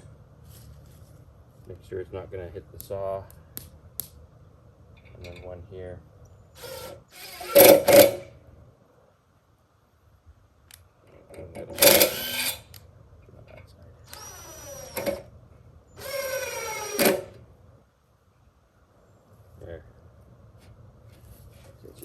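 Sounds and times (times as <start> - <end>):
power drill driving screws: 6.6 - 8.3, 11.6 - 12.8, 14.1 - 15.3, 16.0 - 17.4.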